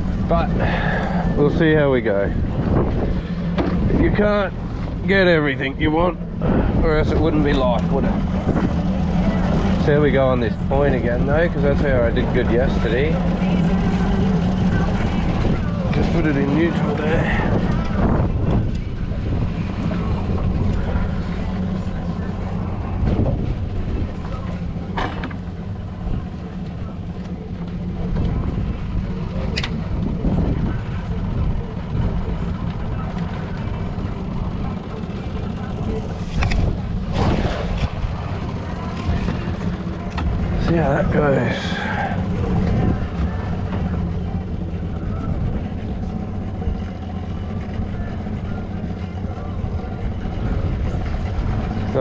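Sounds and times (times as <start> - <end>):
wind on microphone: 0.0 - 5.0, 6.1 - 9.8, 14.0 - 25.0, 27.8 - 40.6
boat motor idling: 0.0 - 52.0.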